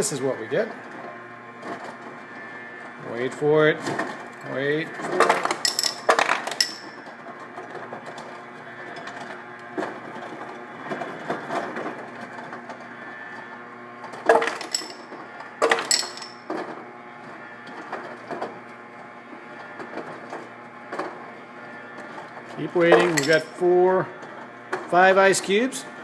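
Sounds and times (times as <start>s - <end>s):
ice dispenser motor hum: 0.0s - 26.0s
ice cubes clattering into glass: 5.2s - 6.8s, 14.3s - 15.0s, 15.6s - 16.4s.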